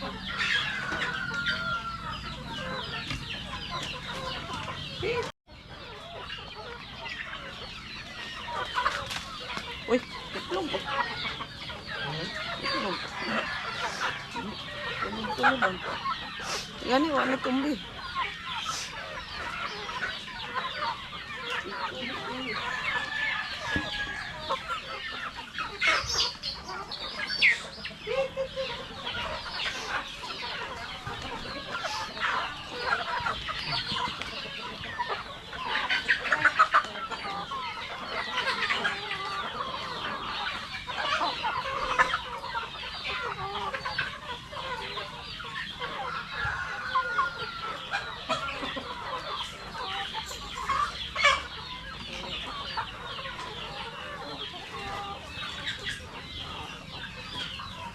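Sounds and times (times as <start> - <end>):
chickens clucking: 0.0 - 57.9.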